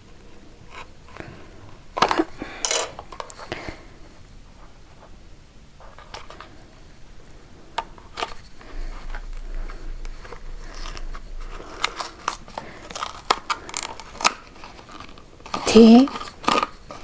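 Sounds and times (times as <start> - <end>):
packaging rustling: 7.9 - 17.0.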